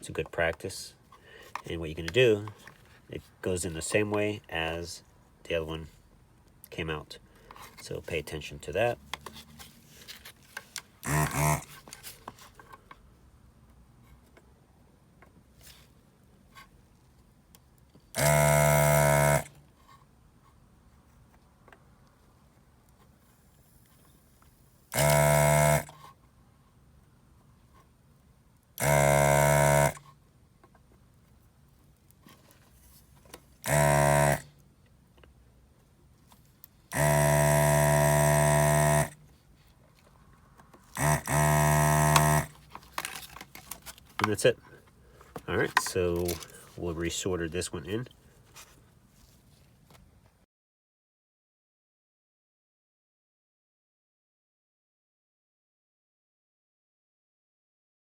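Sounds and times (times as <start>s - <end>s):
desoldering pump buzzing: 11.0s - 11.7s, 18.2s - 19.5s, 24.9s - 25.9s, 28.8s - 30.0s, 33.6s - 34.5s, 36.9s - 39.2s, 40.9s - 43.2s.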